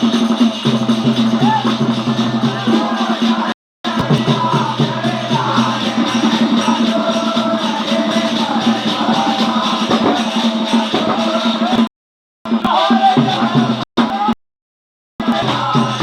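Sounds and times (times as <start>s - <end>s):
rattling jingling percussion: 0.0s - 11.9s.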